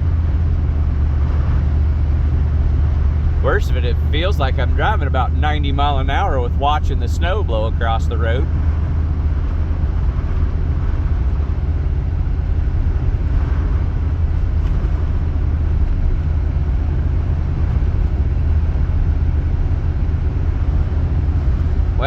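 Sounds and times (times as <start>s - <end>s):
vehicle driving rumble: 0.0s - 22.0s.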